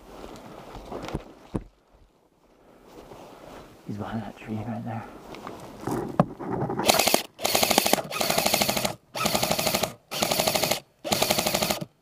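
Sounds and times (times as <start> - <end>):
airsoft rifle firing full-auto: 6.8 - 11.9.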